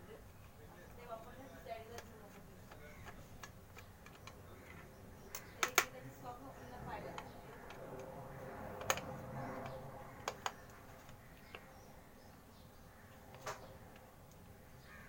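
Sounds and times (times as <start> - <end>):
screwdriver clicking on plastic: 1.8 - 6.0, 7.0 - 11.8.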